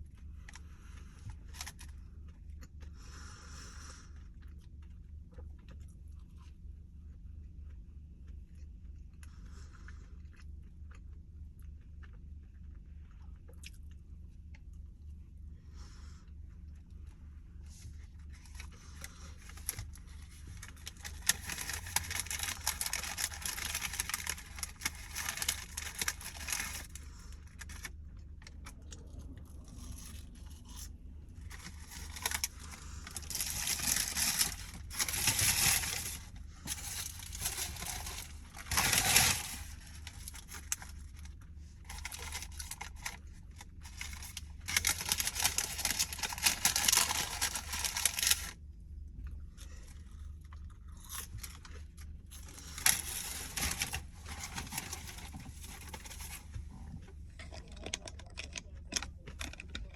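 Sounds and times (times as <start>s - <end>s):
paper packaging crinkling: 1.3s - 1.9s, 18.3s - 28.8s, 29.6s - 48.6s, 51.0s - 56.6s.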